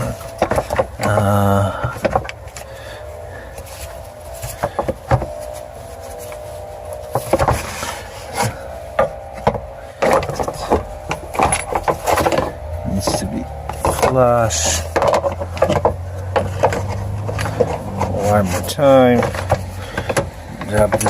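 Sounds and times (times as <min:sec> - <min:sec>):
steady hum: 0:00.0 - 0:21.0
plastic clicks and scraping: 0:03.5 - 0:21.0.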